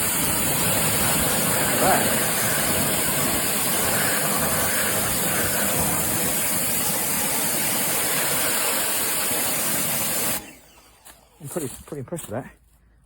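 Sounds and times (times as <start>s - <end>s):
pressure washer spraying: 0.0s - 11.7s.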